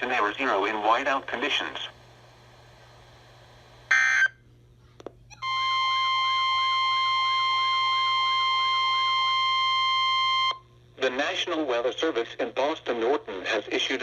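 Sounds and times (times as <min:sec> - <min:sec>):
loud steady attention tone: 0:00.0 - 0:04.4, 0:05.3 - 0:10.6.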